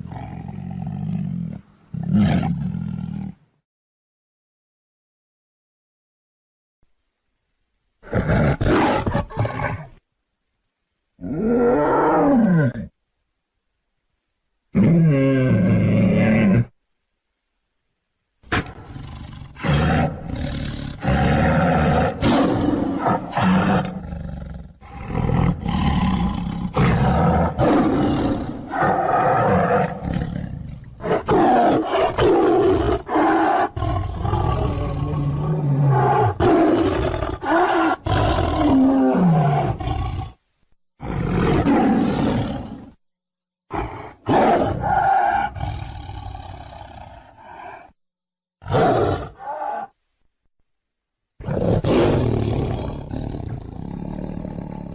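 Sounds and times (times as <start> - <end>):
tiger roaring and growling: 0.0 - 3.4, 14.7 - 16.8, 18.5 - 40.4, 41.0 - 43.0, 43.7 - 48.0, 48.6 - 50.0, 51.4 - 54.9.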